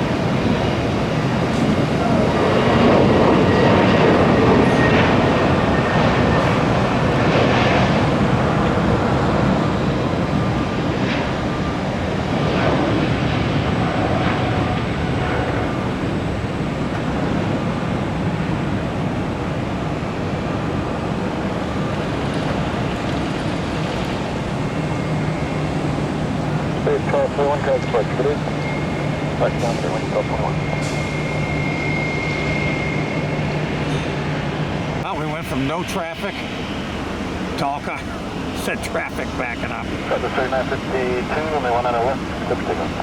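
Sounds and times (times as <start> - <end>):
jet airliner engines running: 0.0 - 43.0.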